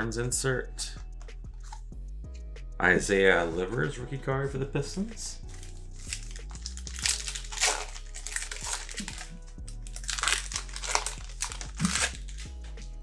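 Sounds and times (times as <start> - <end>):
trading card packs crinkling: 5.4 - 12.8.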